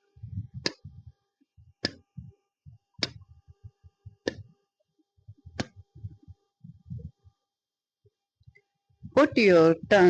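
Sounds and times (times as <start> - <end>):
woman saying t sound: 9.2 - 10.0.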